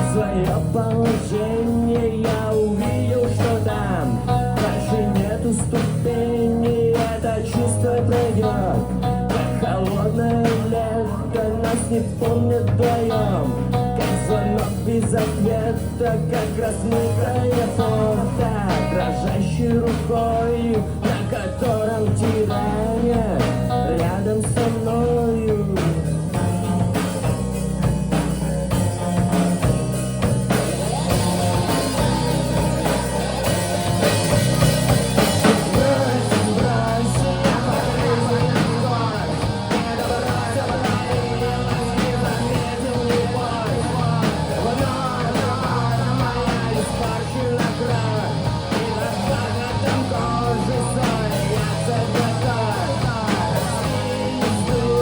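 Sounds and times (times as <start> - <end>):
instrumental rock music: 0.0 - 55.0.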